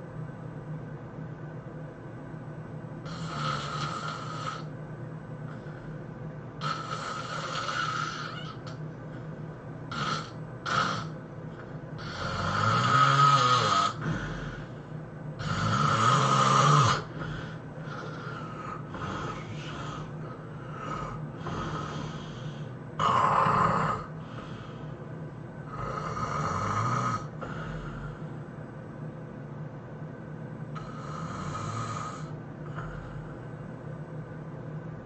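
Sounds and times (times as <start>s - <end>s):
steady low hum: 0.0s - 35.0s
person snoring loudly: 3.0s - 4.7s, 6.6s - 8.8s, 9.9s - 11.2s, 12.0s - 14.8s, 15.4s - 24.8s, 25.7s - 28.2s, 30.8s - 33.3s.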